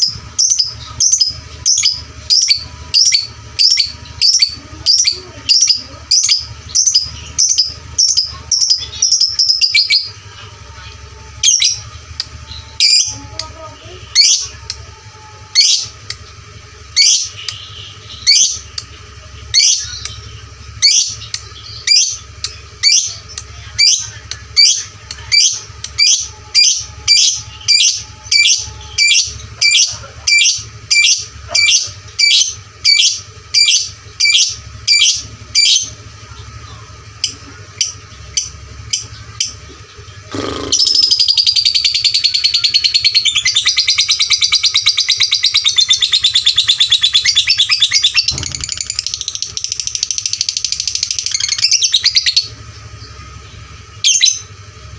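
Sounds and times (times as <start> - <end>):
lovebird chirping: 0.0 - 10.8, 36.7 - 54.5
bird chattering trill: 0.0 - 54.9.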